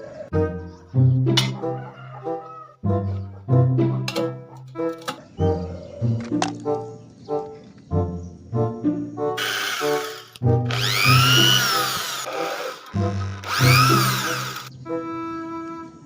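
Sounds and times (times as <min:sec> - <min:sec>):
background music with plucked notes: 0:00.3 - 0:12.2, 0:12.9 - 0:16.0
electric drill whirring: 0:09.4 - 0:14.7.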